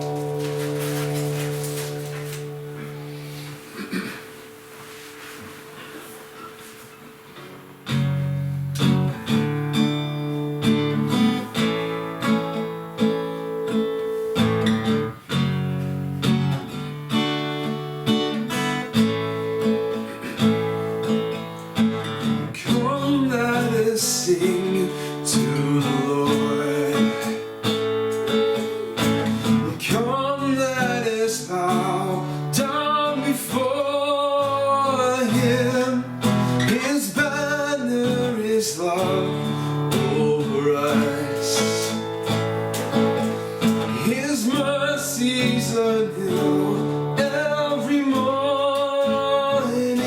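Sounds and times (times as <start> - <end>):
acoustic guitar strumming chords: 0.0 - 50.0
person singing: 22.5 - 27.7, 28.8 - 42.1, 43.9 - 50.0.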